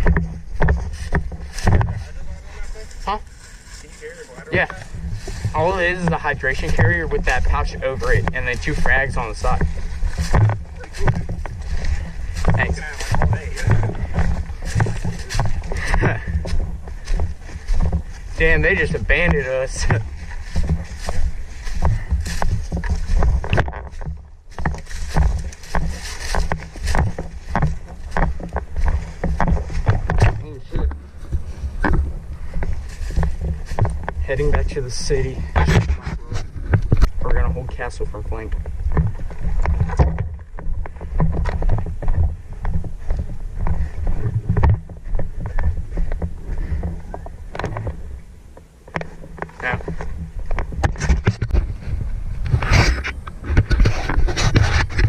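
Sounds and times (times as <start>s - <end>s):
footsteps: 0.0s - 55.0s
gear rustling: 0.0s - 55.0s
wind on microphone: 49.3s - 55.0s.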